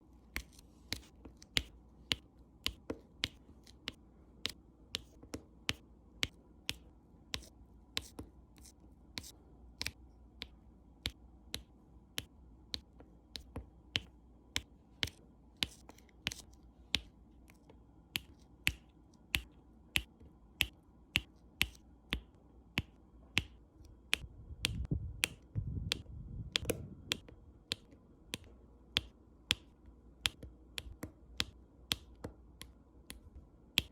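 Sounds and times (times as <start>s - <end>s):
low rumble of handling noise: 24.2s - 27.7s.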